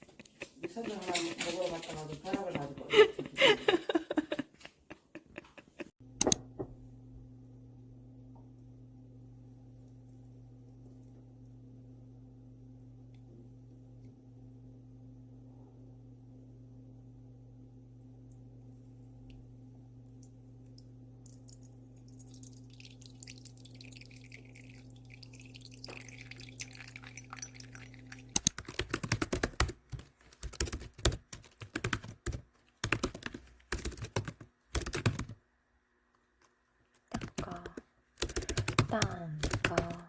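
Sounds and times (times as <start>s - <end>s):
steady low hum: 6.0s - 28.5s
fast typing on keyboard: 28.4s - 35.4s, 37.1s - 40.0s.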